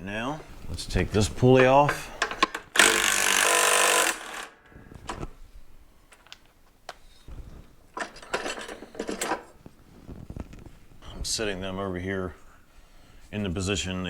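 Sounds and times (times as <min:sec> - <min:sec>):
cordless power tool running: 0:02.8 - 0:04.6
metal parts clinking and rattling: 0:08.0 - 0:09.5.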